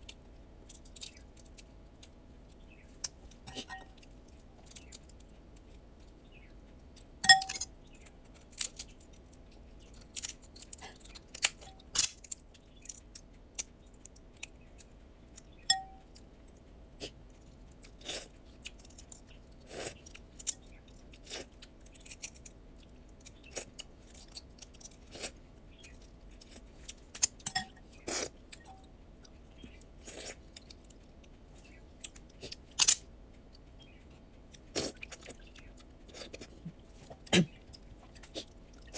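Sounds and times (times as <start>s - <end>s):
crab shells cracking: 7.0s - 14.7s, 20.0s - 25.0s
chewing: 34.5s - 38.9s.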